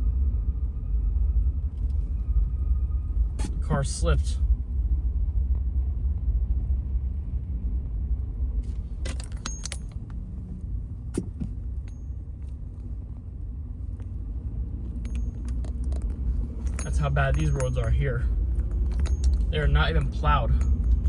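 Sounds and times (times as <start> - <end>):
car interior rumble: 0.0 - 21.0.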